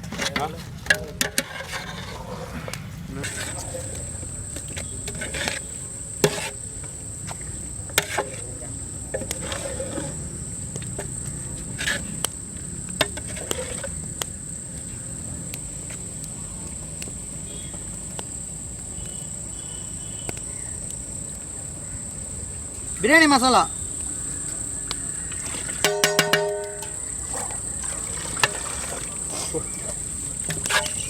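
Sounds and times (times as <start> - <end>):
crickets chirring: 0.0 - 31.0
sharp knocks: 25.8 - 27.1.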